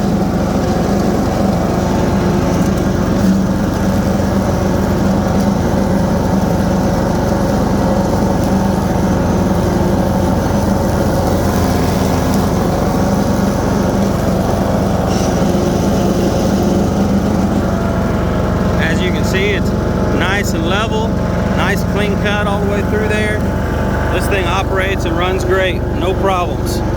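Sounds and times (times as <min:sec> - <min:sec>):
lawn mower engine running: 0:00.0 - 0:26.9
mower cutting grass: 0:00.0 - 0:26.9.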